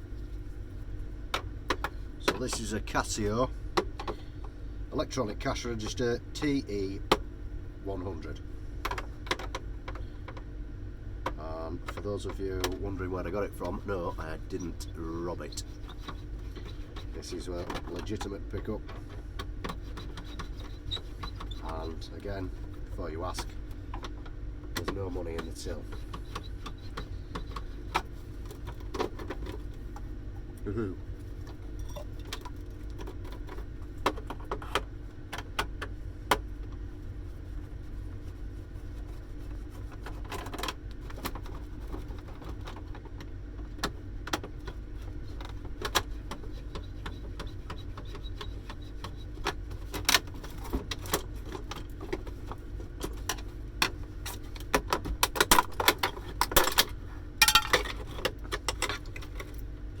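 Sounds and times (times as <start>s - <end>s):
steady low hum: 0.0s - 60.0s
plastic and metal parts rattling: 44.4s - 59.6s.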